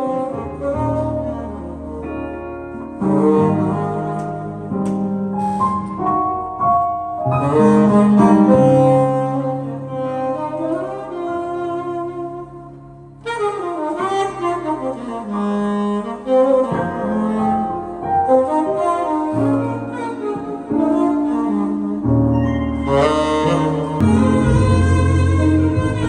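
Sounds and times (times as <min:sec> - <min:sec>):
saxophone playing: 0:00.0 - 0:04.7, 0:07.3 - 0:26.0
keyboard accompaniment: 0:00.0 - 0:26.0.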